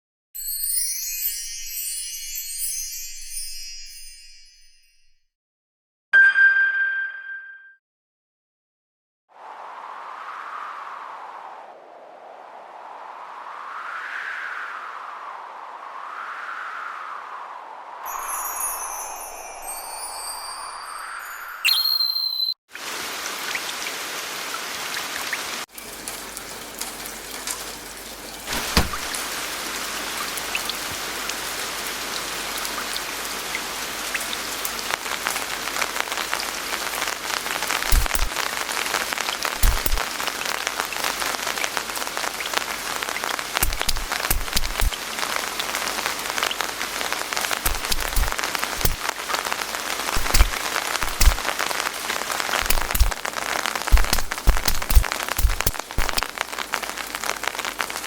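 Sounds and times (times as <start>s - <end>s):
rain falling: 14.5s - 21.4s, 22.7s - 58.0s.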